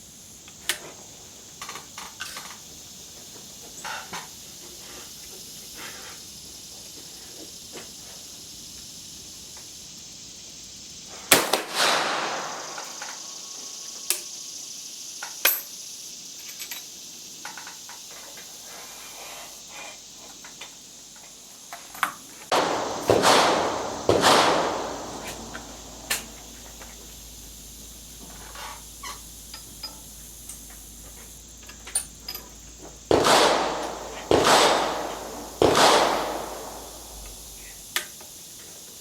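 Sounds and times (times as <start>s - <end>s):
rifle shots echoing: 11.3s - 13.6s, 22.5s - 28.3s, 33.0s - 37.9s.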